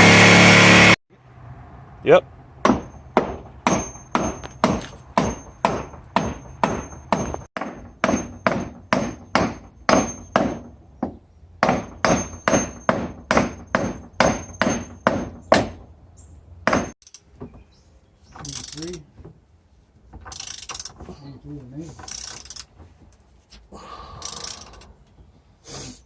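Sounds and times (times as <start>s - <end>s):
hammer blows: 2.6s - 15.8s, 16.6s - 17.0s.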